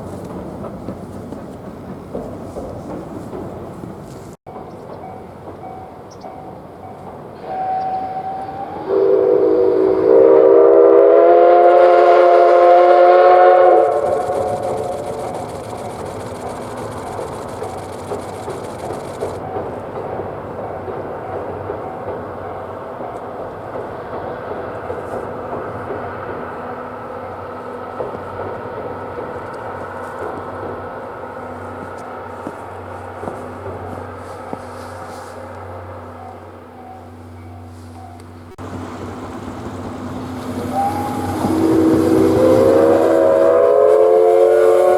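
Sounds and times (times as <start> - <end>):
train running rumble: 0.0 - 44.9
steam whistle blast: 7.4 - 16.0, 40.5 - 44.9.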